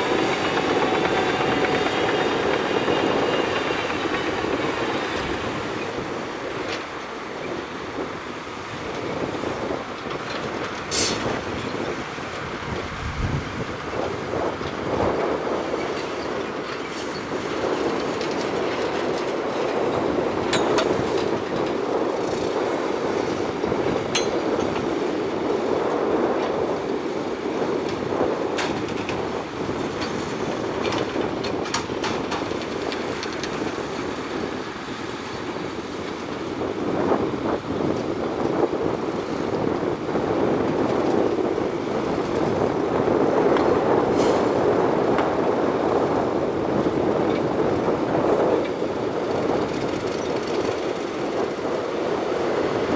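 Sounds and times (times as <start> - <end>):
diesel engine running: 0.0 - 7.3
steel tracks clattering: 0.0 - 52.9
sharp metallic knocks: 24.1 - 24.8.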